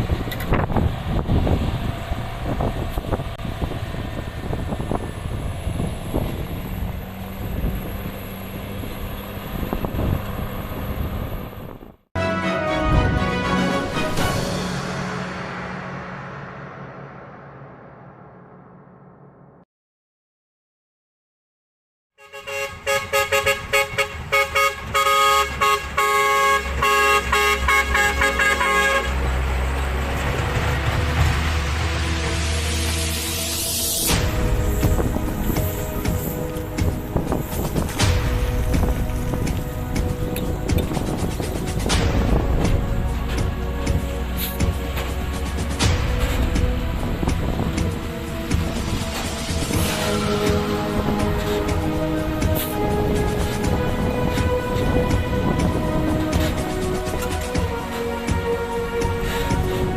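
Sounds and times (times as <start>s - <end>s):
diesel engine running: 0.0s - 19.6s, 24.2s - 59.9s
low rumble: 0.0s - 19.6s, 27.6s - 59.9s
short tooting horn notes: 12.2s - 16.5s, 22.2s - 30.1s
steady rushing noise: 12.8s - 19.6s, 28.4s - 59.9s.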